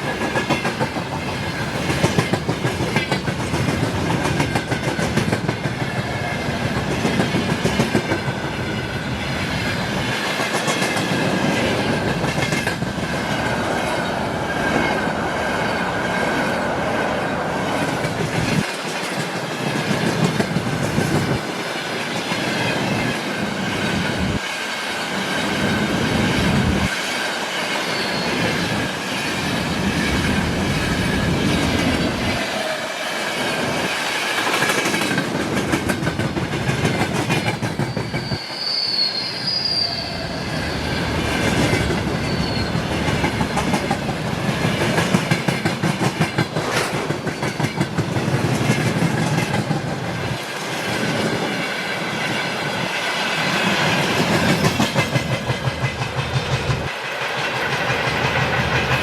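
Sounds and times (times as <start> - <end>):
train wheels clattering over rails: 0.0 - 38.5, 40.7 - 59.0
high wheel squeal: 26.9 - 29.4, 37.8 - 41.2, 42.0 - 43.0.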